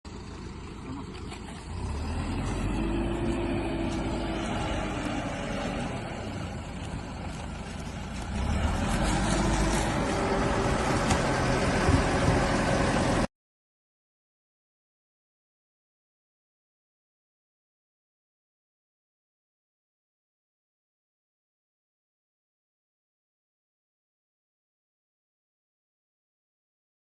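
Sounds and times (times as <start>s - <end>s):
heavy vehicle engine running: 0.1s - 13.3s.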